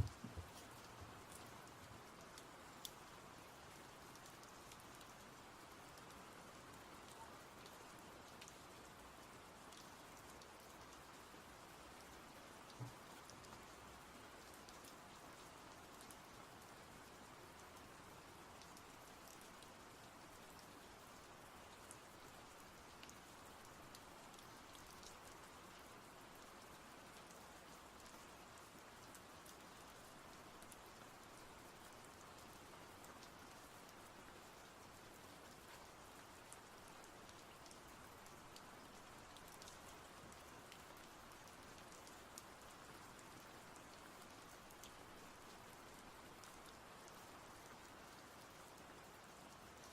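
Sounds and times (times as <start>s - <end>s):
light ticks: 0.0s - 1.5s, 2.2s - 3.0s, 7.1s - 8.6s, 9.7s - 9.9s, 37.3s - 38.4s, 39.3s - 42.5s
faint steady hiss: 0.0s - 49.9s.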